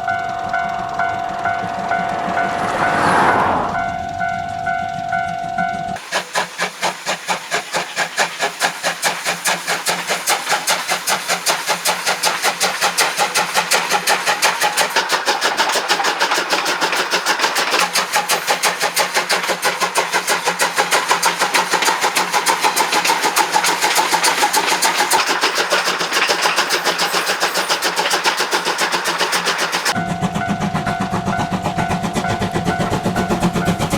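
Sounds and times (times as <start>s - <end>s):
steam locomotive chuffing: 0.0s - 33.9s.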